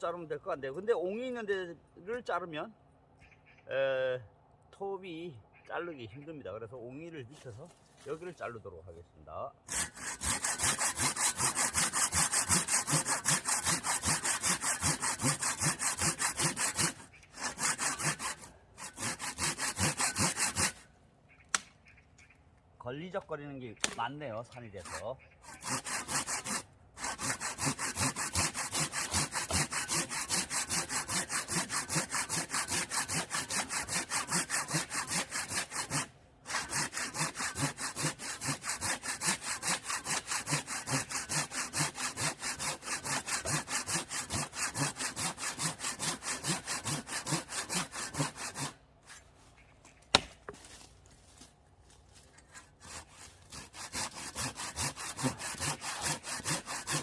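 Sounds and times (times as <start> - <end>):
hand saw cutting log: 9.7 - 20.9, 23.8 - 49.3, 52.1 - 57.0.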